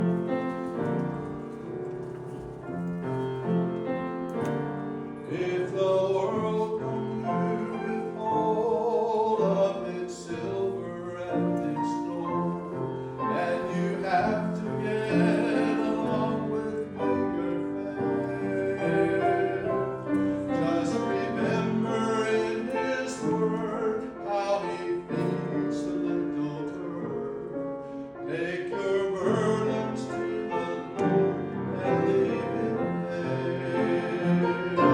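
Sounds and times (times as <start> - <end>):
piano accompaniment: 0.0 - 34.9
man singing with vibrato: 4.5 - 34.9.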